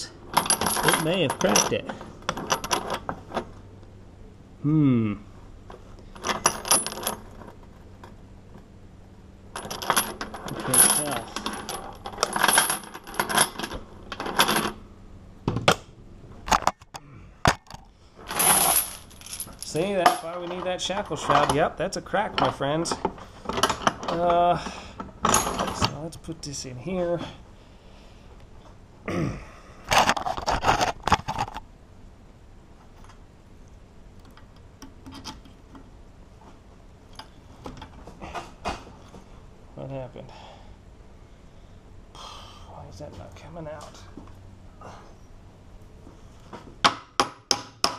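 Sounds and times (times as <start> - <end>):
padlock scraping and clicking: 34.3 - 35.6.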